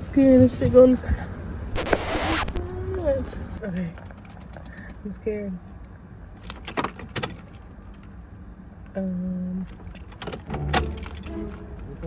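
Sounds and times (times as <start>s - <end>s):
keys jangling and clicking: 9.7s - 11.9s.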